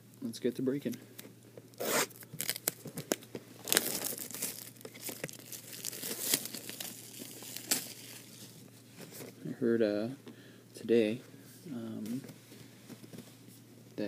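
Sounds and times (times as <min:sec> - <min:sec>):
plastic packaging tearing and crinkling: 0:01.7 - 0:08.6.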